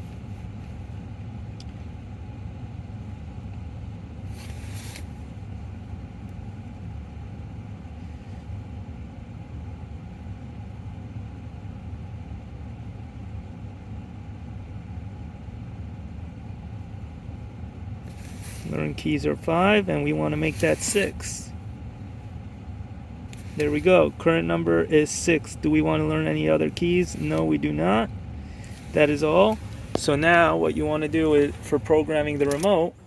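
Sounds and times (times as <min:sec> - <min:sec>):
car engine idling: 0:13.3 - 0:33.0
short hiss: 0:18.1 - 0:18.8.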